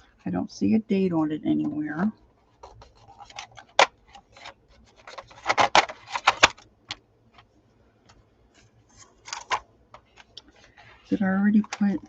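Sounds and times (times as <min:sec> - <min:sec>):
wooden pencils clicking and rattling: 0:09.2 - 0:12.0.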